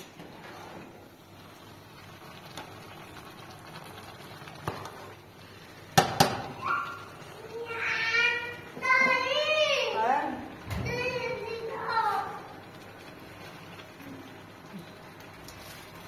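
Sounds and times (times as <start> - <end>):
sharp knocks: 6.0 - 6.5.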